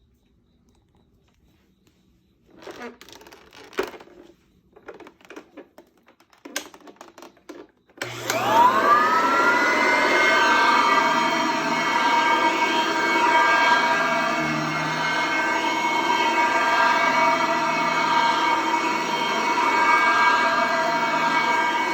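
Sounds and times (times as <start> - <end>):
vacuum cleaner motor whine: 8.0 - 21.9.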